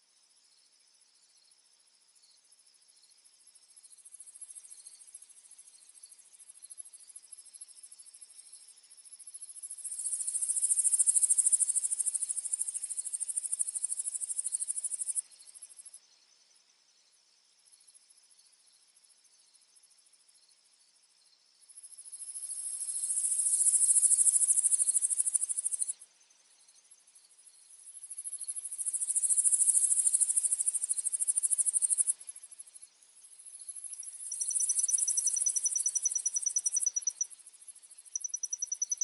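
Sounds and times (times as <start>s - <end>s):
insects trilling: 9.2s - 15.9s, 21.9s - 26.0s, 27.8s - 39.0s.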